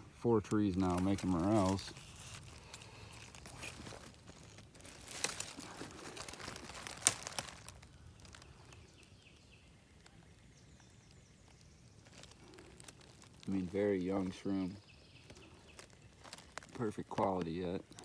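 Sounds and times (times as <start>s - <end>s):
leaves rustling and crunching: 0.3s - 18.0s
faint bird chirps: 5.8s - 16.7s.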